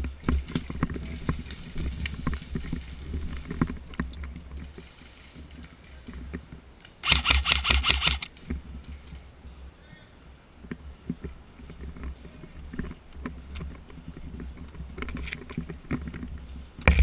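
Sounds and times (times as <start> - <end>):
low rumble of wind: 0.0 - 17.0
small clicks: 6.8 - 8.5
airsoft gun firing burst: 7.0 - 8.3.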